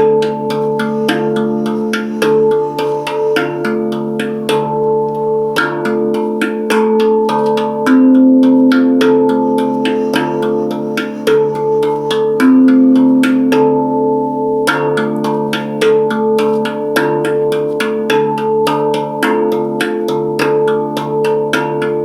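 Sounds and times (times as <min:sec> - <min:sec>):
handpan played: 0:00.0 - 0:22.0.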